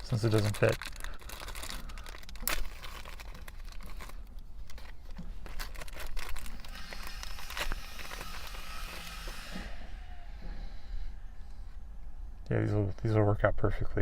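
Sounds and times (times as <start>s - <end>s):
crinkling rustle of handling: 0.0s - 10.1s.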